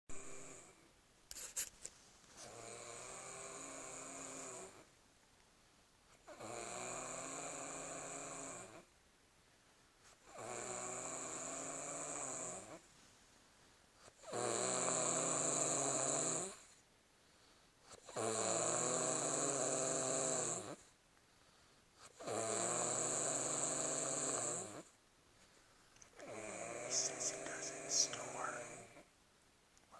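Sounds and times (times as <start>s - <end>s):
rasping snores: 0.1s - 0.9s, 2.4s - 4.9s, 6.2s - 8.9s, 10.2s - 12.8s, 14.1s - 16.7s, 17.9s - 20.8s, 22.0s - 24.9s, 26.2s - 29.1s
quiet breathing: 16.5s - 18.0s, 20.7s - 22.2s, 24.7s - 29.1s.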